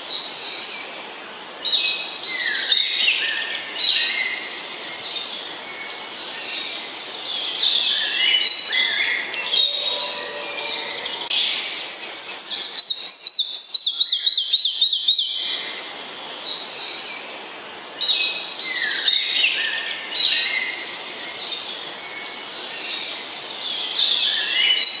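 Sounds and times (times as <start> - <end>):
songbirds chirping and whistling: 6.9 - 15.4.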